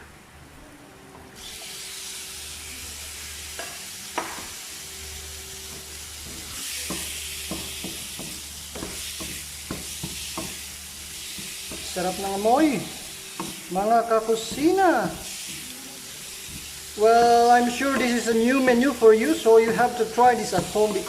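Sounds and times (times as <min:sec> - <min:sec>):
shrimp sizzling in a pan: 0:01.4 - 0:21.0
spatula scraping and tapping pan: 0:05.7 - 0:12.0, 0:13.3 - 0:13.7, 0:14.4 - 0:15.7, 0:16.4 - 0:21.0.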